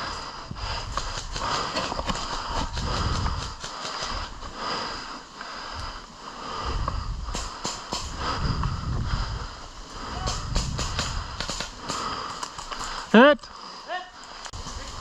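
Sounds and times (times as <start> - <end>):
sharp clicks: 10.2 - 13.1.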